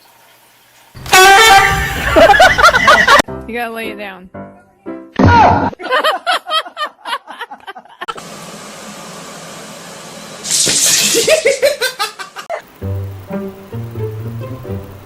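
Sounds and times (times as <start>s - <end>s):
person laughing: 1.7s - 3.2s, 5.4s - 8.1s, 11.0s - 12.7s.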